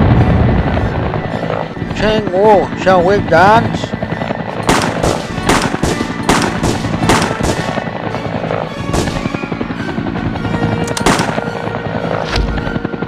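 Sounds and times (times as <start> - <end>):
background music: 0.0 - 13.0
gunfire shots and bursts: 4.5 - 8.2, 8.8 - 9.5, 10.9 - 11.6.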